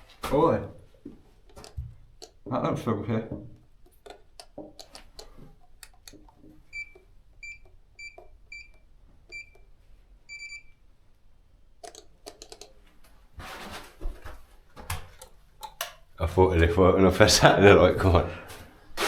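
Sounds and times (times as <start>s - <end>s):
faint clicks and knocks: 0.8s - 2.5s, 3.3s - 10.5s, 11.8s - 16.2s
faint electronic alarm beeping: 6.7s - 10.9s.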